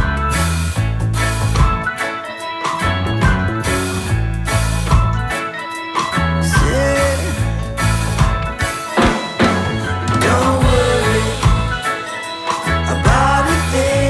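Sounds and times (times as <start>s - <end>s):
bass line: 0.0s - 2.0s, 2.8s - 5.4s, 6.2s - 11.9s, 12.7s - 14.0s
drum kit: 0.0s - 14.0s
guitar: 0.0s - 14.0s
person singing lead vocal: 6.4s - 7.7s, 9.6s - 14.0s.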